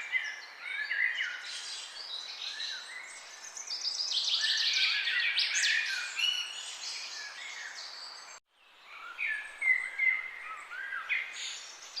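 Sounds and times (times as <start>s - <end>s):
songbirds singing: 0.0s - 12.0s.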